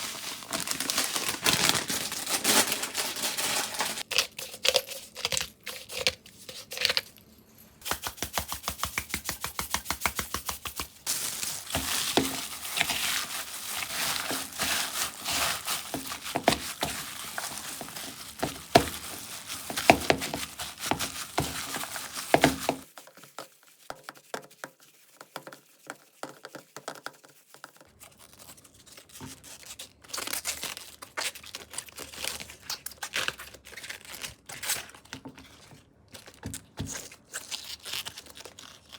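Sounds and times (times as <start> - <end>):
crinkling and rustling: 0.0 - 4.1, 9.5 - 23.6
cabbage leaves crinkling: 0.0 - 4.2, 10.7 - 22.9
quick evenly spaced taps: 7.8 - 11.0.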